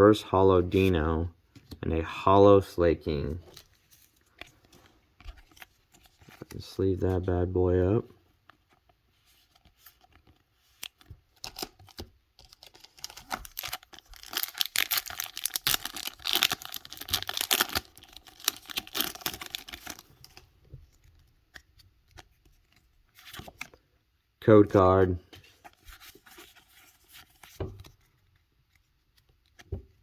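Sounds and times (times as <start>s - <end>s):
foil wrapper tearing and crinkling: 11.4s - 20.4s.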